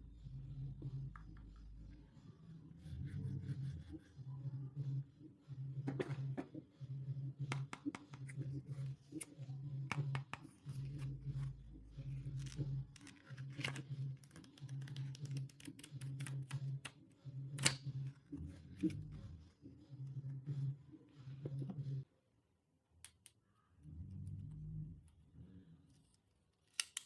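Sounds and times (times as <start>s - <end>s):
soft low pulsing tone: 0.0s - 14.2s.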